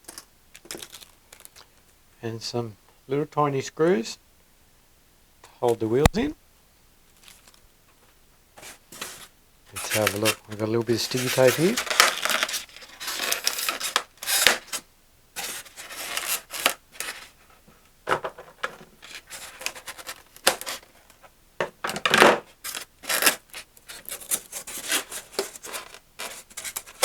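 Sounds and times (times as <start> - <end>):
packaging rubbing and scraping: 0.0 - 1.8, 8.6 - 14.8, 15.4 - 17.6, 18.4 - 21.2, 22.4 - 27.0.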